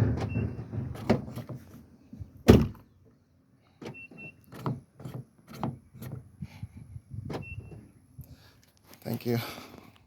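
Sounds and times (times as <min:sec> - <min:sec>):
car door shutting: 0:02.4 - 0:02.8.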